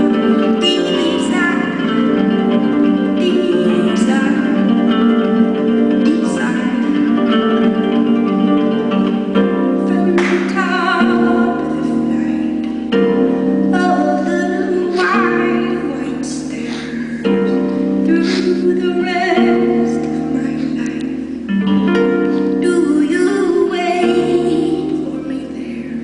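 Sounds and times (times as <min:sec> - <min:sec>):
woman singing: 0:00.0 - 0:02.3, 0:03.0 - 0:05.3, 0:06.0 - 0:07.9, 0:09.8 - 0:12.9, 0:13.7 - 0:17.4, 0:18.0 - 0:21.3, 0:22.6 - 0:26.0
harp plucked chords: 0:00.0 - 0:26.0.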